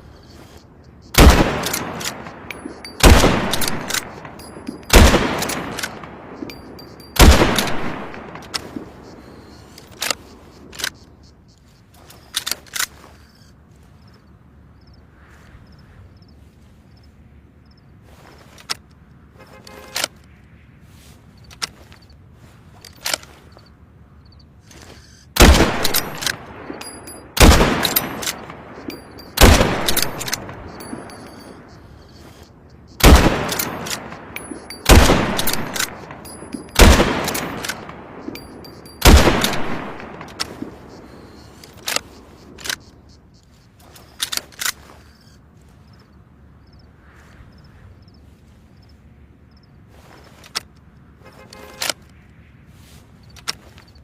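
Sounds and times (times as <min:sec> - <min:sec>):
rifle shots echoing: 0:01.1 - 0:10.0, 0:25.4 - 0:32.3, 0:33.0 - 0:42.9
light sharp clicks: 0:53.2 - 0:54.0.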